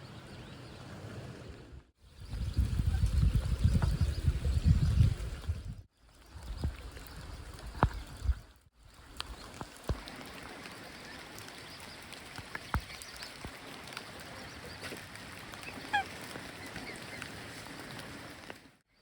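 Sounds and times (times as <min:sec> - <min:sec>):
rain patter: 0:02.5 - 0:18.8
waterbird call: 0:06.1 - 0:18.6.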